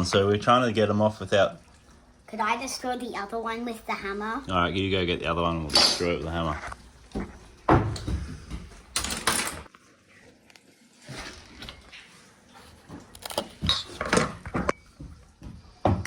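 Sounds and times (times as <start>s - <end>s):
tools clinking and clattering: 8.9s - 9.7s.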